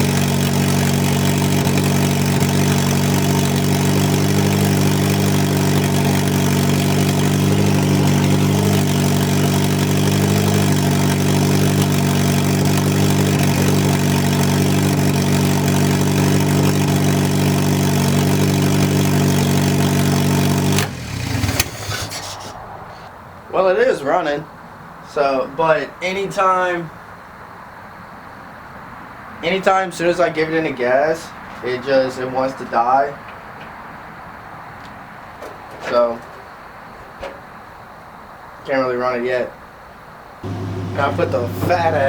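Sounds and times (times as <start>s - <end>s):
car engine idling: 0.0s - 23.1s, 40.4s - 42.0s.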